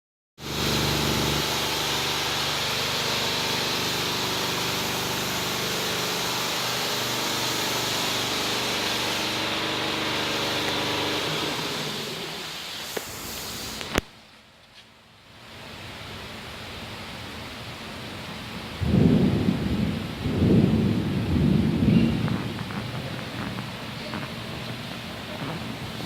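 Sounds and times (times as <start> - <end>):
shop machine humming: 0.4 - 14.0, 22.2 - 26.0
strong hiss: 0.4 - 14.4, 18.8 - 26.0.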